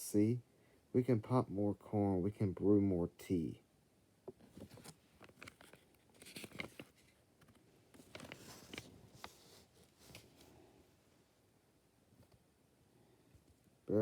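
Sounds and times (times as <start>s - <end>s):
paper pages rustling: 4.5s - 10.6s.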